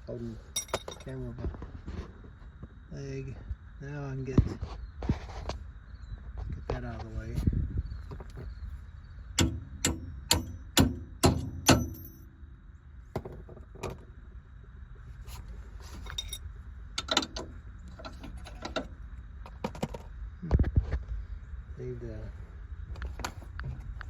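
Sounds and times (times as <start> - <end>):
metal tools knocking on car parts: 0.6 - 1.1, 9.4 - 12.2, 17.0 - 18.9
light metal clinks: 0.6 - 1.2, 11.6 - 12.3, 15.9 - 16.4.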